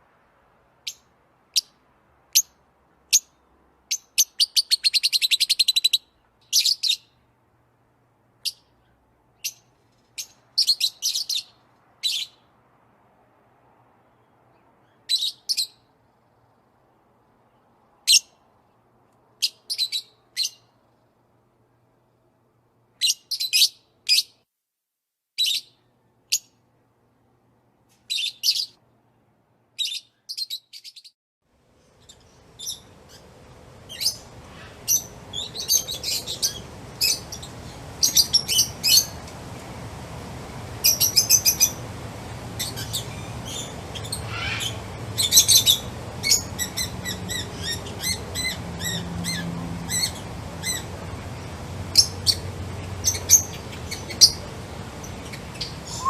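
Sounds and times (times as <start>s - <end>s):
outdoor background noise: 0.0s - 24.5s, 25.3s - 56.0s
songbirds chirping: 31.7s - 56.0s.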